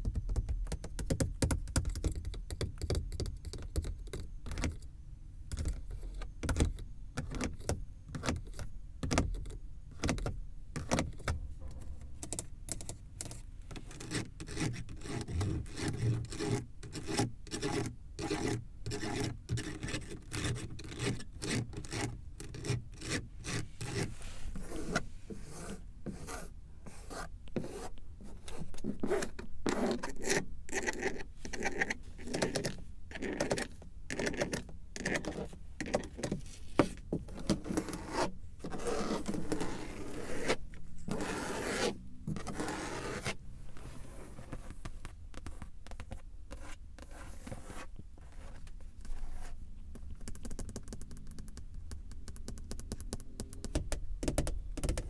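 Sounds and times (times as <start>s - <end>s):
scraping strokes on car surface: 22.7s - 27.9s, 36.3s - 45.6s.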